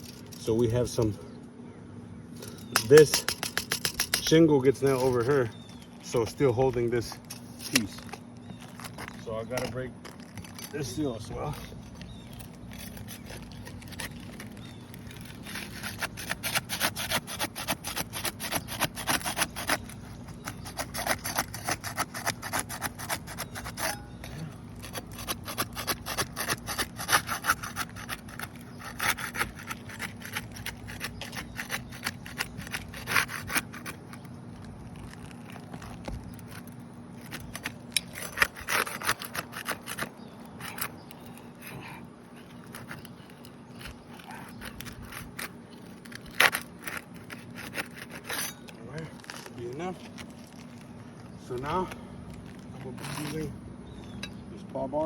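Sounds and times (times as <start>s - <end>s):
scraping under roof shingle: 2.4s - 54.2s.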